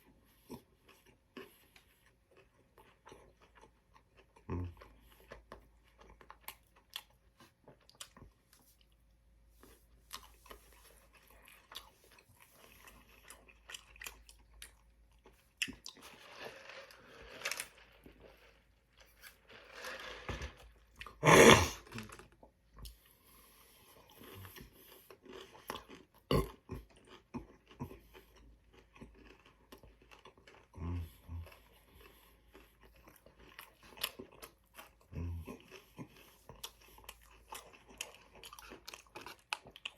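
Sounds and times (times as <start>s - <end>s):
man chewing and crunching food: 0.0s - 39.9s.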